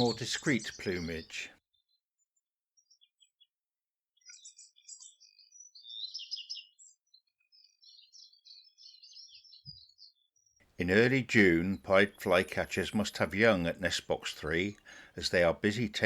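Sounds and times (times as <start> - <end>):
songbird twittering: 0.0 - 2.0, 4.2 - 11.0.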